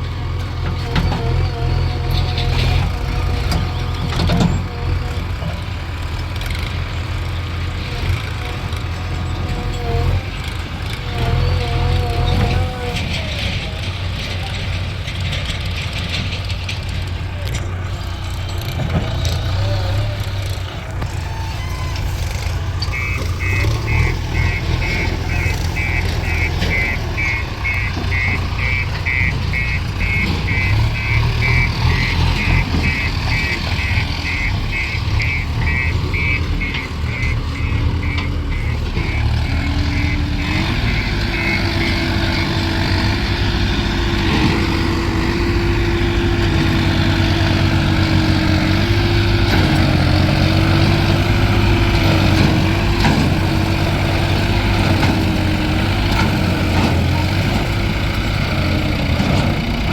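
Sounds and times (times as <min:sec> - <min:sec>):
diesel engines running: 0:00.0 - 0:59.9
engine revving up: 0:18.4 - 0:59.9
reversing alarm beeping: 0:22.4 - 0:47.9.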